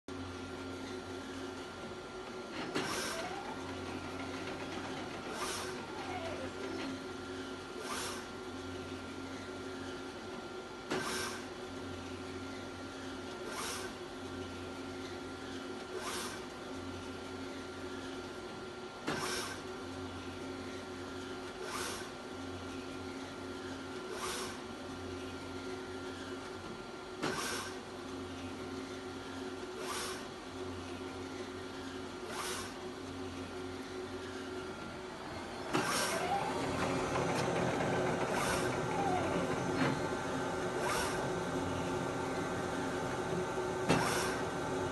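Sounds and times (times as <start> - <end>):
printer motor hum: 0.1 - 44.9
printer carriage rushing: 2.6 - 7.1, 35.2 - 44.9
motor whine: 2.7 - 7.6, 33.6 - 44.9.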